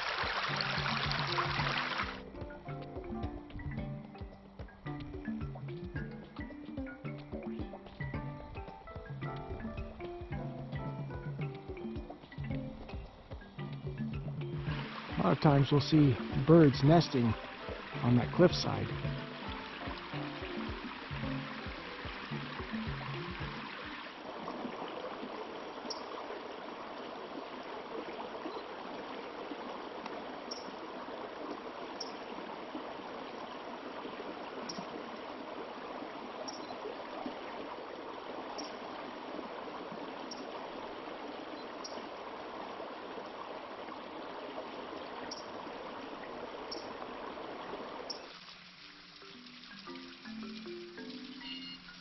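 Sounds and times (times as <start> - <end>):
creek water rushing: 0.0 - 3.4, 4.1 - 52.0
faint high ticks: 25.8 - 26.2, 30.0 - 30.8, 34.6 - 35.0.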